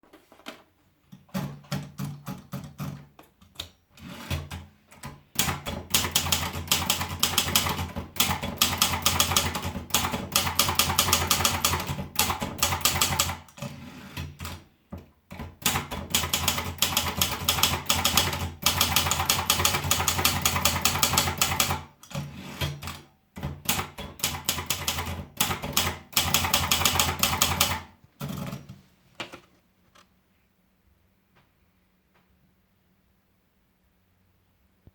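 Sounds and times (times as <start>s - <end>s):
typewriter keys clacking: 1.3s - 14.6s, 15.4s - 23.0s, 23.6s - 28.6s.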